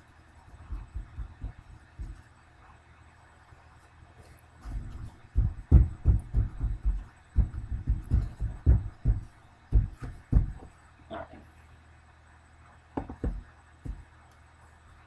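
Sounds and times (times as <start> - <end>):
dull thumps on tabletop: 13.0 - 14.0.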